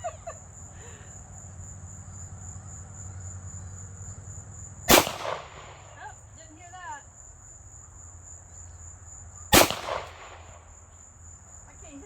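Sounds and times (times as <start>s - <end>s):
crickets chirring: 0.0s - 12.0s
gunshot: 4.9s - 6.0s, 9.5s - 10.8s.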